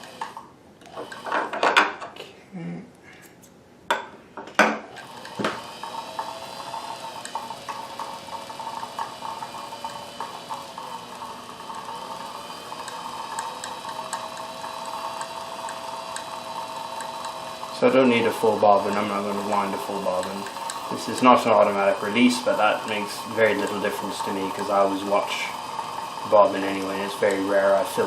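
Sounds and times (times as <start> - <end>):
sewing machine clicks: 0.0 - 1.4, 4.9 - 11.0, 12.2 - 21.5
sewing machine motor humming: 0.0 - 1.5, 4.9 - 28.0.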